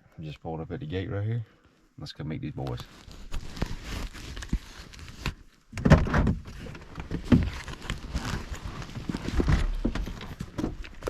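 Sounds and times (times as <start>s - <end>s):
rustling and knocks of movement: 2.6s - 11.0s.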